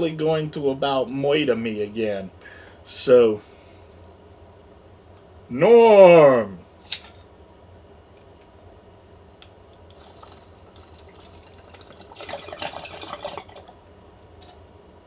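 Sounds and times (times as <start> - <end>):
water bubbling in a bong: 9.7 - 14.6.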